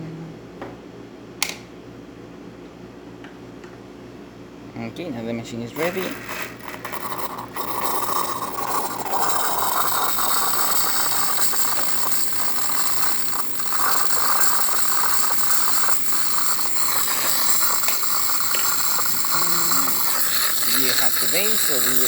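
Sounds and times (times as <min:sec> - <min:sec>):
espresso machine pump rattling: 0:05.8 - 0:22.0
steam wand hissing: 0:05.8 - 0:22.0.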